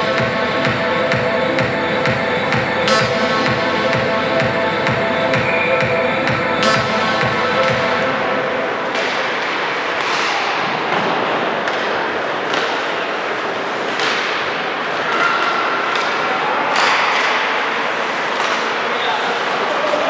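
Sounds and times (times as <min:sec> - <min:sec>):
crowd and play noise: 0:00.0 - 0:20.0
hockey sticks and puck knocks: 0:08.8 - 0:19.1.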